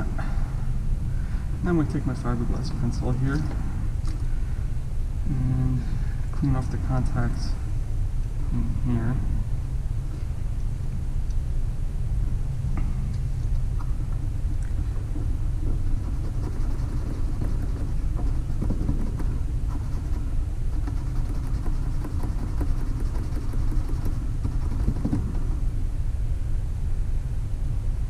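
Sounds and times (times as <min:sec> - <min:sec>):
steady low rumble: 0:00.0 - 0:28.0
pencil scratching metal contacts: 0:15.0 - 0:25.6.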